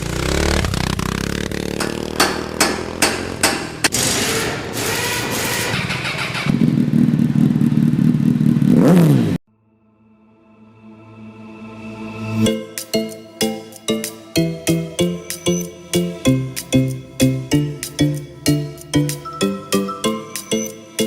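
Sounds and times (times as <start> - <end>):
motorcycle engine revving: 0.0 - 9.4
sharp engine knocks: 1.7 - 4.0
quiet music: 9.7 - 21.0.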